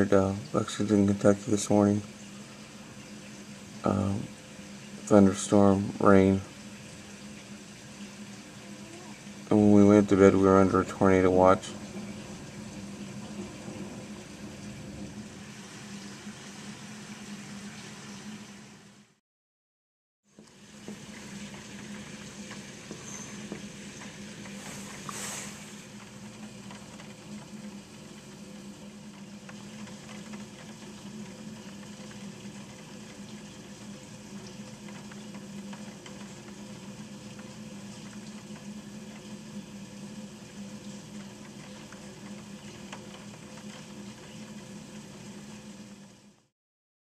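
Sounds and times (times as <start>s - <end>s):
low hum: 0.0s - 19.2s
steady rain pattering: 0.0s - 19.2s, 20.3s - 46.5s.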